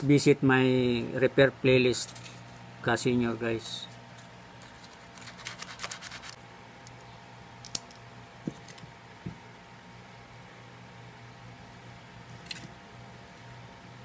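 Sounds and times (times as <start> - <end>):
small switch parts clicking: 5.3 - 8.0.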